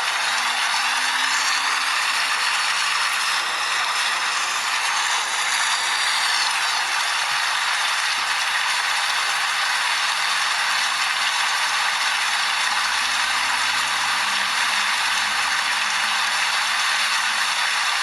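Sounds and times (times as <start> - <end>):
dense rain pattering: 6.5 - 18.0.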